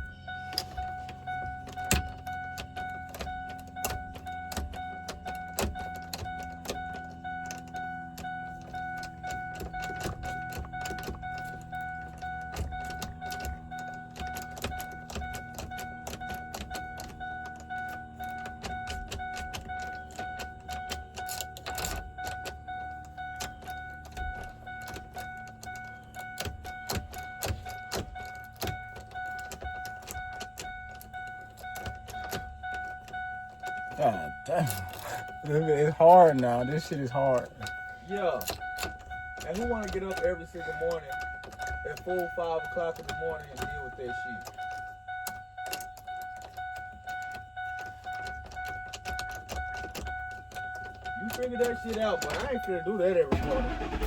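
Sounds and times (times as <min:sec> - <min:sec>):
steady high electronic tone: 0:00.0 - 0:03.5
key clicking in ignition: 0:00.0 - 0:54.0.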